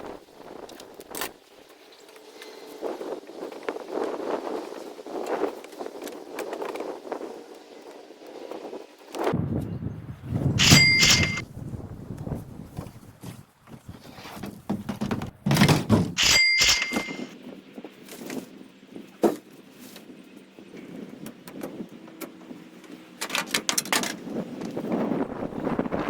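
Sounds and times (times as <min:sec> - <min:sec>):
short metallic ring: 0:10.6 - 0:11.4, 0:16.2 - 0:17.3.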